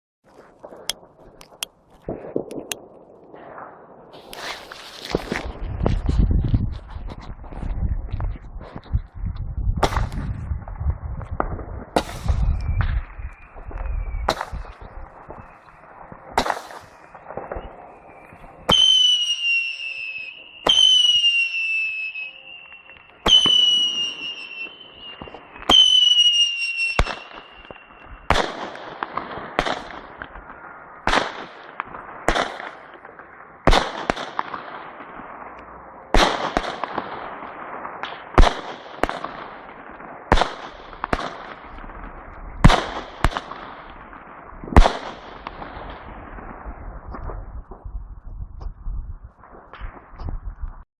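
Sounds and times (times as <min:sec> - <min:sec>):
firework shots: 0:11.4 - 0:19.9, 0:23.3 - 0:48.8, 0:49.4 - 0:50.8.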